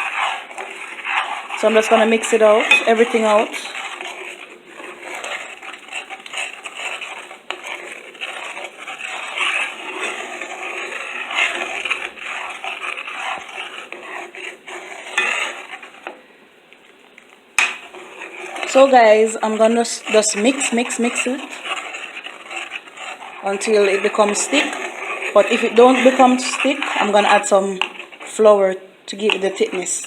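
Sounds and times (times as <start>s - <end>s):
utensil stirring and scraping pot: 0.0s - 16.3s, 17.6s - 30.0s
utensil clinking against pot: 2.5s - 3.7s.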